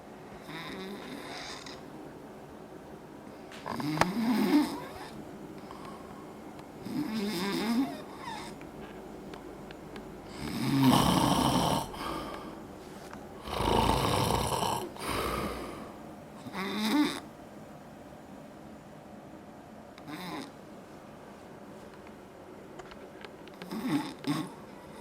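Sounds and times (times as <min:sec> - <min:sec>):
loud rattling snores: 0:00.4 - 0:01.8, 0:03.7 - 0:05.1, 0:06.8 - 0:08.5, 0:10.3 - 0:12.2, 0:13.4 - 0:17.2, 0:23.6 - 0:24.6
quiet breaths: 0:03.2 - 0:17.3, 0:23.5 - 0:25.0.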